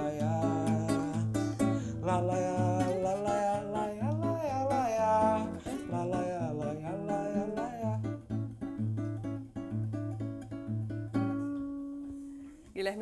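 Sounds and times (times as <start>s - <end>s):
person singing la la la: 0.0s - 8.5s
acoustic guitar strumming: 0.0s - 12.6s.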